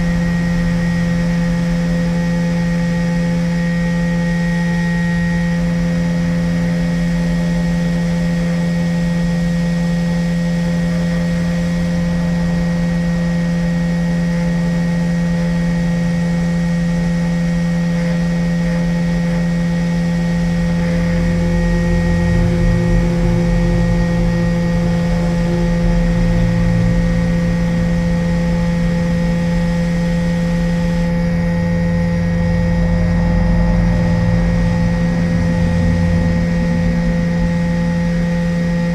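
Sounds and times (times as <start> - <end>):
hot air station motor hum: 0.0 - 38.9
high steady tones: 8.8 - 38.9
gusty low air rumble: 20.4 - 38.9.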